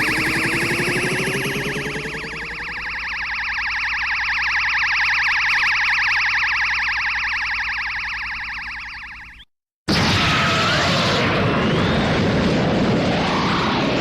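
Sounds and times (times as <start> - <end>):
warbling siren-like charge-up tone: 0.0 - 9.3.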